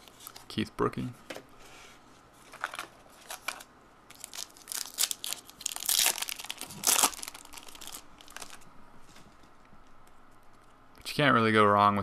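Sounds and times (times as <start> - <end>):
card pack wrapper crinkling: 2.5 - 8.7.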